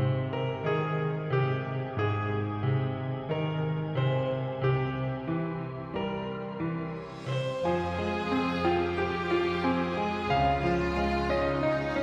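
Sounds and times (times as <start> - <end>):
slow sad background music: 0.0 - 12.0.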